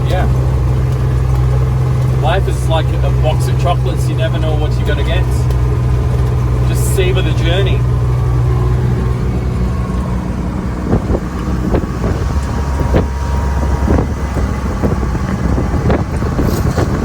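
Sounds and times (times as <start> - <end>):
vehicle engine running: 0.0 - 17.0
vehicle knocks and rattles: 0.0 - 17.0
wind on microphone: 7.7 - 17.0.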